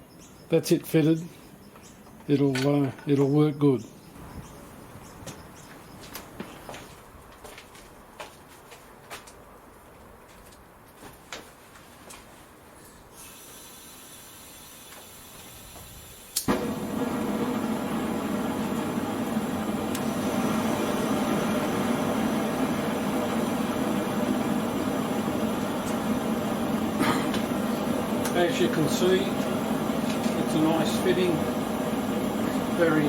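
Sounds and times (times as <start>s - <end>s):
faint hiss: 13.0s - 16.7s
gas burner roaring: 13.2s - 33.0s
burner igniter click: 16.3s - 17.8s, 18.8s - 20.3s, 28.2s - 28.7s.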